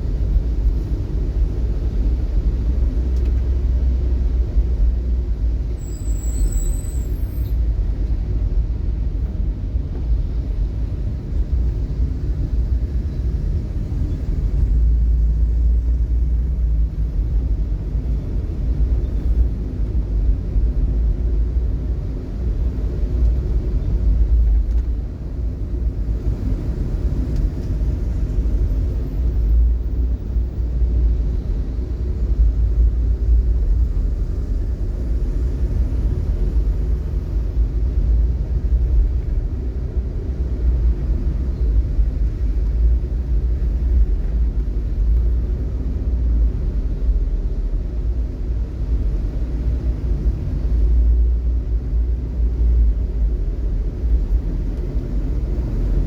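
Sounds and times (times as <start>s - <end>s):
vehicle engine and road noise: 0.0s - 56.0s
brief high squeak: 5.8s - 7.6s.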